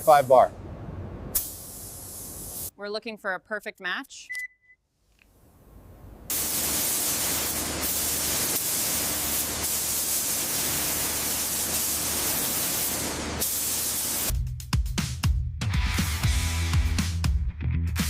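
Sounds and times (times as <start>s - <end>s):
spray gun hissing: 1.4s - 2.7s, 6.3s - 14.3s.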